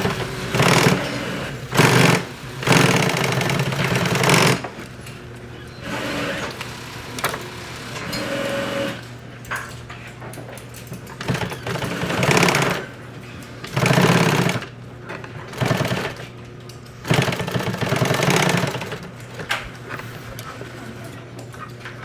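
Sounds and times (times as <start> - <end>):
sewing machine stitching: 0.0 - 4.6, 11.2 - 12.9, 13.6 - 14.7, 15.5 - 16.3, 17.0 - 19.5.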